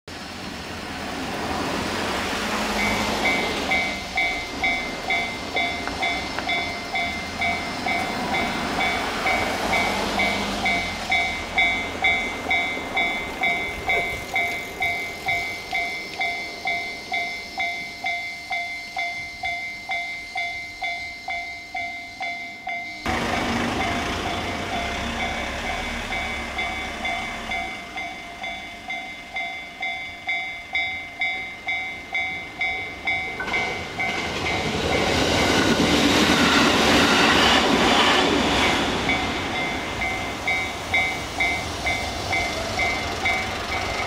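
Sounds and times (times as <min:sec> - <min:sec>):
passing train running: 0:00.1 - 0:44.0
level crossing warning bell: 0:02.0 - 0:44.0.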